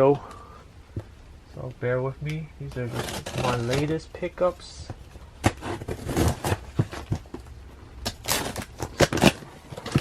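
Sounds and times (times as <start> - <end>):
packaging rustling: 2.7 - 4.1, 5.4 - 10.0.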